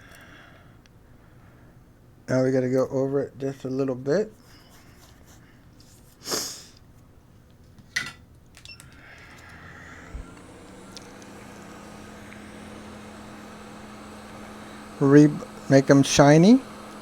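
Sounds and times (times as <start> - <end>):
short hiss: 6.2 - 6.8
hot air blower with fan hum: 8.9 - 17.0
click: 10.4 - 11.4.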